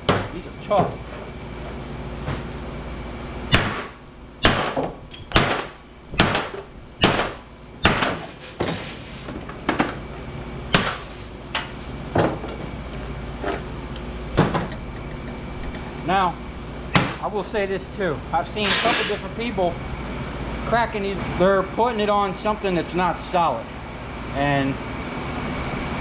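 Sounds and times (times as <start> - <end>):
steady low hum: 0.0 - 26.0
hammer striking steel: 3.5 - 8.4, 10.7 - 11.1.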